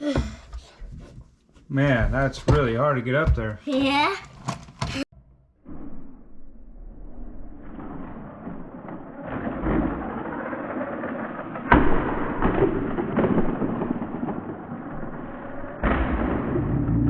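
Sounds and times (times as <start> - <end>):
toy truck crashing: 9.0 - 16.3
toy truck running and tumbling: 9.4 - 11.6.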